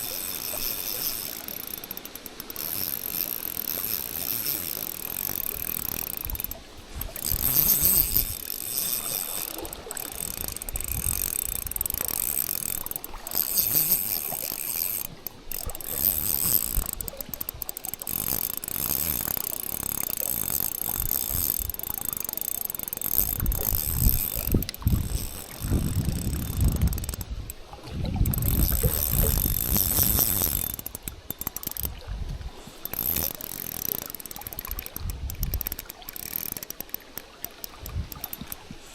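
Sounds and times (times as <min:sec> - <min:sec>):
fishing reel whirring and clicking: 0:00.0 - 0:38.9
wind buffeting microphone: 0:23.2 - 0:31.1.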